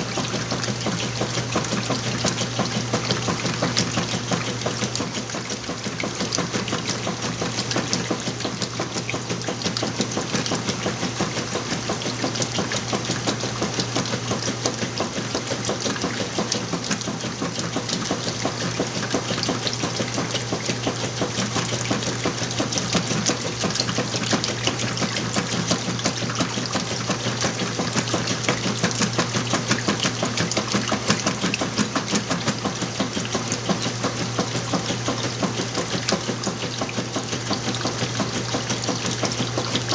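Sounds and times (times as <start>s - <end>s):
washing machine motor hum: 0.0s - 39.9s
water sloshing: 0.0s - 39.9s.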